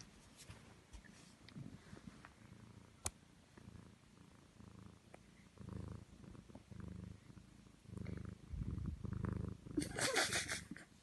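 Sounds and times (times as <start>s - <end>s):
cat snoring: 4.6s - 9.8s.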